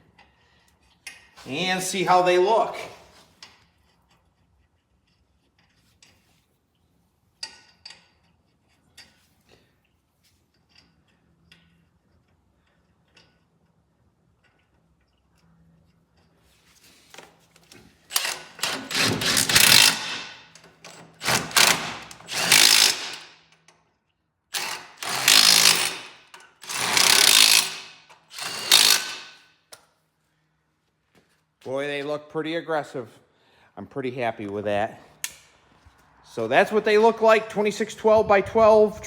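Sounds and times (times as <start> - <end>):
impact wrench bursts: 18.0 - 23.4, 24.5 - 29.5.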